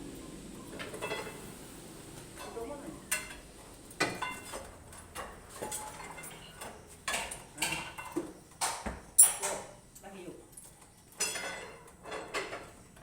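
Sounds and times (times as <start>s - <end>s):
metal tools clinking and knocking: 4.0s - 12.8s.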